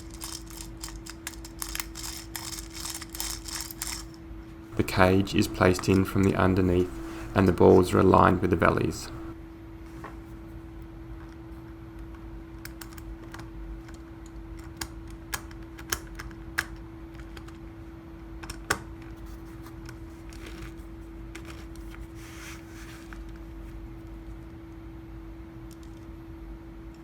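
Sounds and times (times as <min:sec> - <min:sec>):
steady low hum: 0:04.6 - 0:09.4.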